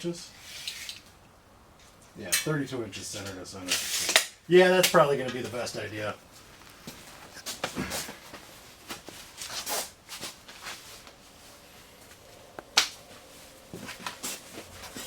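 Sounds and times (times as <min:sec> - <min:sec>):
rustling handling noises: 0:04.9 - 0:15.0.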